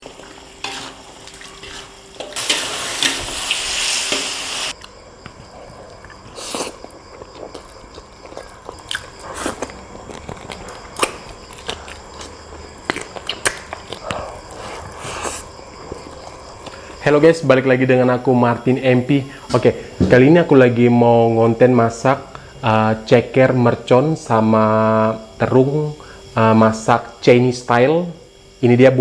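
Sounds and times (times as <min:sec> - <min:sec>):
loud hiss: 0:01.8 - 0:04.7
biting and chewing: 0:04.8 - 0:16.8
wet smacks: 0:12.9 - 0:14.0.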